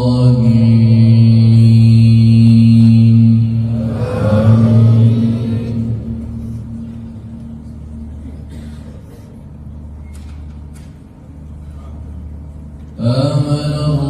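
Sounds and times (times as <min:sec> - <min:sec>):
held low voice tone: 0:00.0 - 0:10.2
low hum of sound system: 0:00.0 - 0:14.0.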